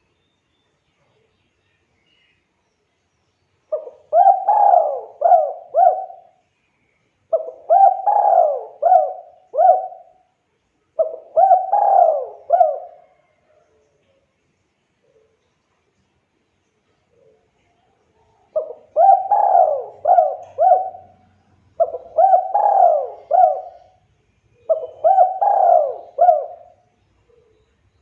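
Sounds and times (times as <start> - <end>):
dove cooing: 3.7 - 6.4, 7.3 - 10.2, 11.0 - 13.6, 18.5 - 24.0, 24.6 - 27.6.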